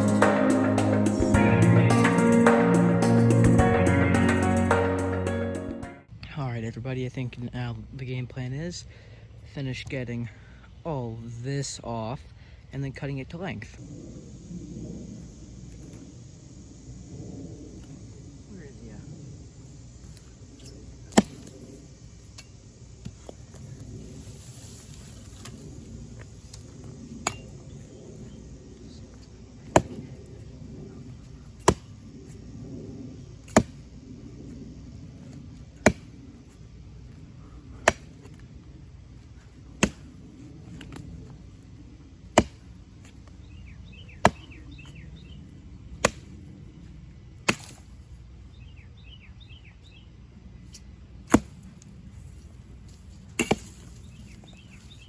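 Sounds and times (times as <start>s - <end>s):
axe chopping wood: 21.1s - 21.6s, 27.2s - 27.6s, 29.6s - 30.1s, 31.6s - 32.0s, 33.4s - 33.9s, 35.7s - 36.2s, 37.7s - 38.4s, 39.7s - 41.0s, 42.3s - 43.2s, 44.2s - 45.0s, 46.0s - 46.4s, 47.5s - 47.9s, 51.2s - 51.8s, 53.4s - 54.7s.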